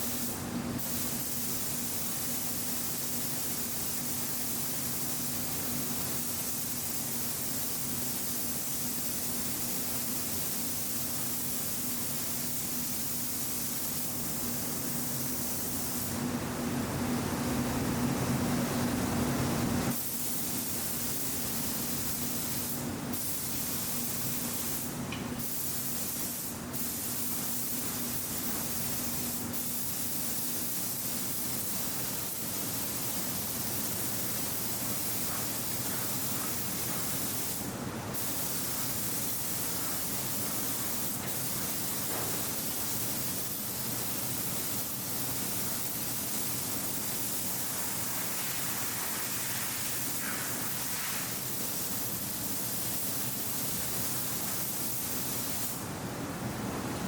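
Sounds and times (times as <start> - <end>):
paint spray gun hissing: 0.0 - 16.2, 19.9 - 55.8.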